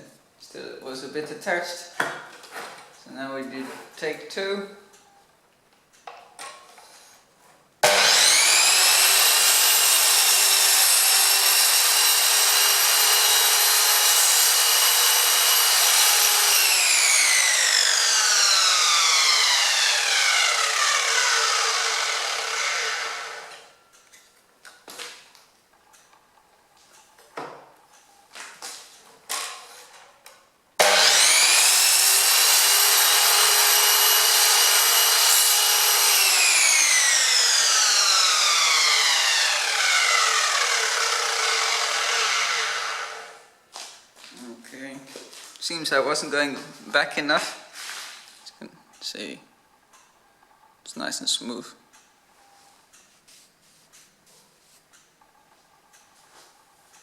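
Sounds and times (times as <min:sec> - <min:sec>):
mitre saw whining: 0:07.8 - 0:23.8, 0:30.8 - 0:43.5
saw blade spinning down: 0:07.8 - 0:23.8, 0:30.8 - 0:43.5.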